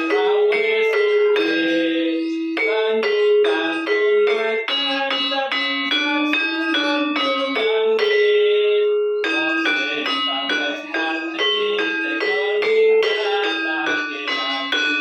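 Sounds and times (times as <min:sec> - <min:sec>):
bell-like melody: 0:00.0 - 0:15.0.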